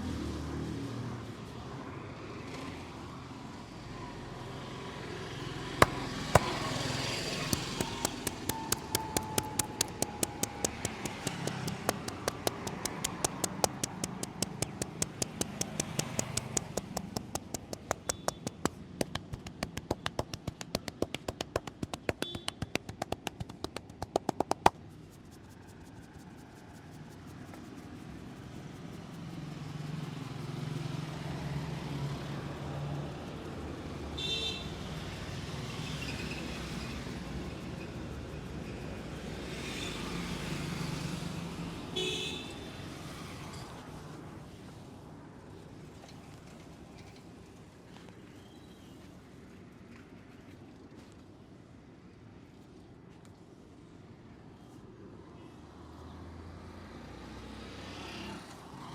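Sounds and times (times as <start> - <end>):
street traffic: 0.0 - 58.9
hands slapping on skin: 5.8 - 27.8.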